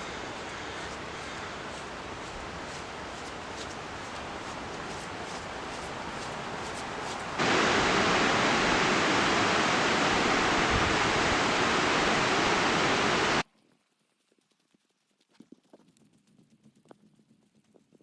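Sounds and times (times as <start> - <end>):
fast-flowing water rushing: 0.0 - 13.4
outdoor background: 0.0 - 13.4.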